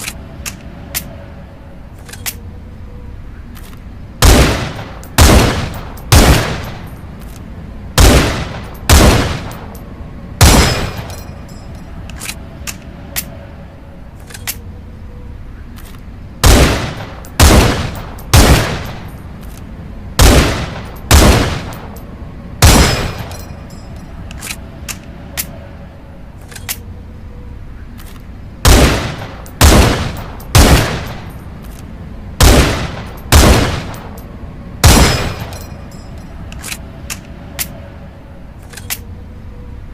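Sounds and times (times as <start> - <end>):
rifle shots with echo: 4.2 - 6.8, 8.0 - 9.7, 10.4 - 11.1, 16.4 - 19.1, 20.2 - 21.9, 22.6 - 23.3, 28.6 - 31.2, 32.4 - 34.1, 34.8 - 35.5.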